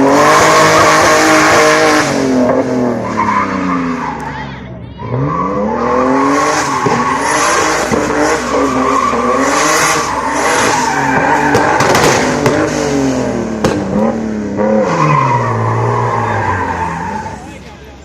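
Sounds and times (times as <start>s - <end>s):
car engine revving: 0.0s - 18.0s
sharp cracks: 10.6s - 12.8s, 13.6s - 14.0s.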